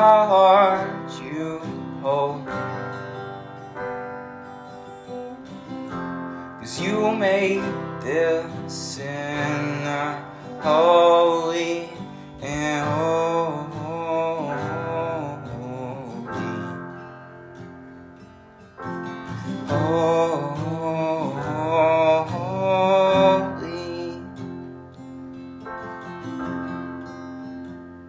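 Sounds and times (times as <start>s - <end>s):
person singing wordless notes: 0.0s - 3.3s, 6.6s - 17.1s, 19.4s - 24.7s
acoustic guitar: 0.0s - 28.0s
digital piano: 0.0s - 28.0s.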